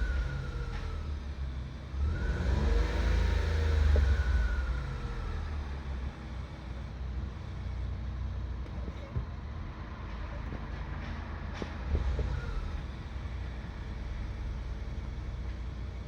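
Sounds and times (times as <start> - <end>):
engine idling rumble: 0.0 - 2.4, 3.0 - 16.0.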